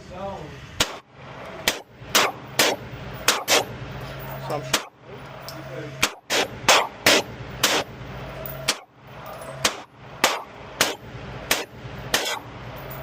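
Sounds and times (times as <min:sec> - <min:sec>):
pistol shots: 0:00.8 - 0:01.0, 0:01.6 - 0:03.7, 0:06.0 - 0:07.9, 0:09.6 - 0:12.5.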